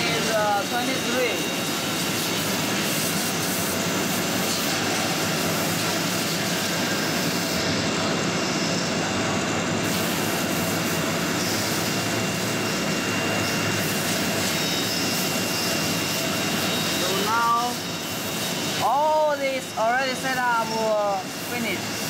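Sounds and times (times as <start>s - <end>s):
faint high whine: 0.0s - 22.0s
machinery droning: 0.0s - 22.0s.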